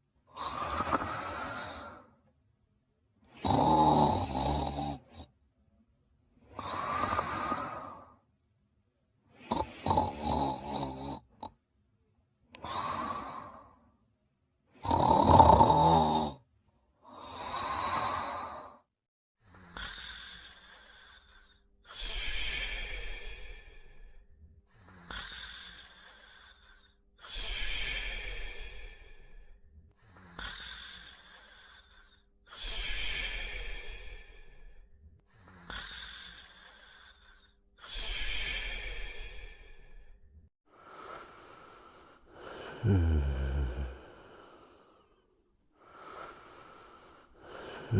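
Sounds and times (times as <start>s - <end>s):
cartoon character snoring: 0.3s - 2.1s, 3.3s - 5.3s, 6.5s - 8.2s, 9.4s - 11.6s, 14.8s - 16.5s, 19.4s - 24.0s, 24.7s - 29.3s, 30.0s - 34.6s, 35.3s - 40.0s, 40.9s - 45.1s, 45.8s - 47.9s.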